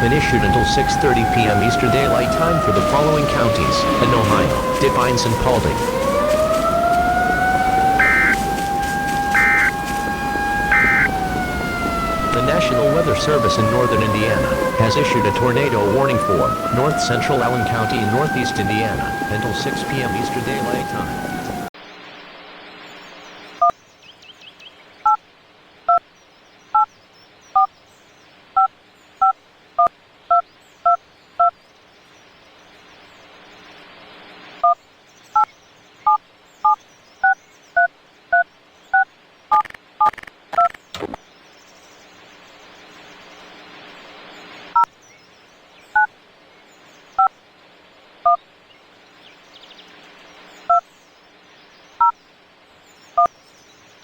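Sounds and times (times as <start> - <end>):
low hum: 0.0 - 23.4.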